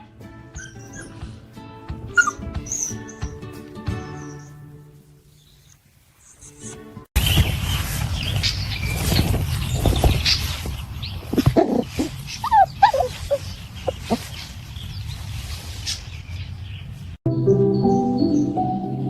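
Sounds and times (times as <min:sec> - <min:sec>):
wolf pups whimpering and yipping: 0:00.5 - 0:04.8, 0:11.2 - 0:14.5.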